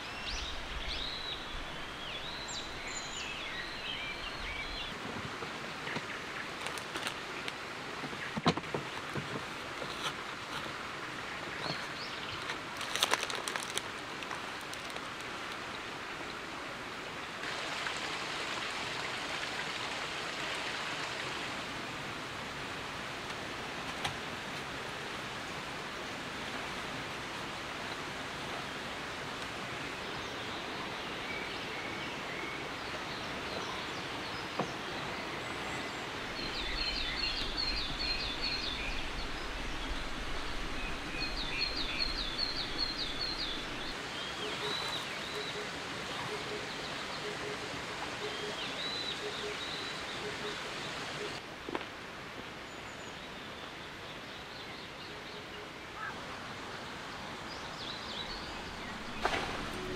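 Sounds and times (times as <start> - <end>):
small birds chirping: 35.4 - 45.6.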